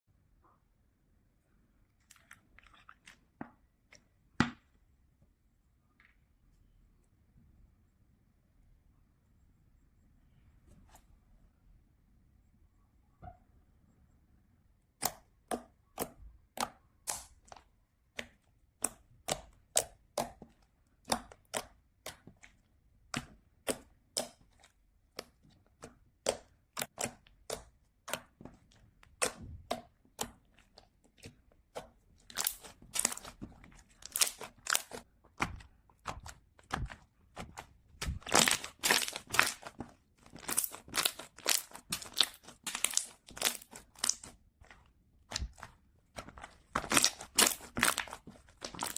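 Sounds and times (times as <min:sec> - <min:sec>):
slime popping and squishing: 0:14.9 - 0:48.9.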